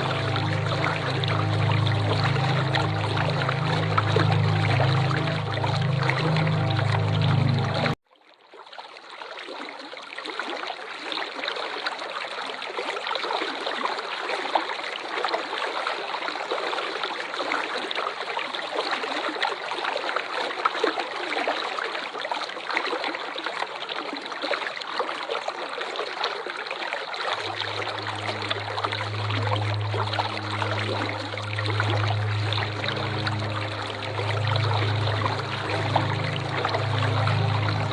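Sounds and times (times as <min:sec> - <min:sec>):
low steady hum: 0:00.0 - 0:08.0, 0:27.4 - 0:37.9
waterfall rushing: 0:00.0 - 0:08.0, 0:27.4 - 0:37.9.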